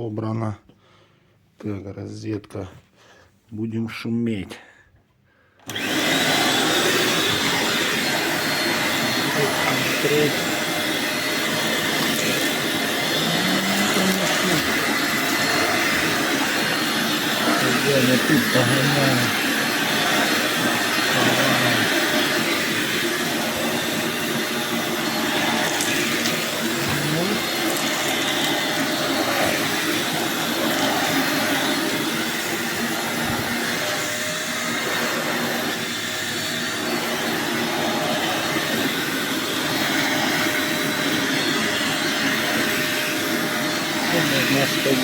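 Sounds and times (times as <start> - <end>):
vacuum cleaner running: 5.6 - 45.0.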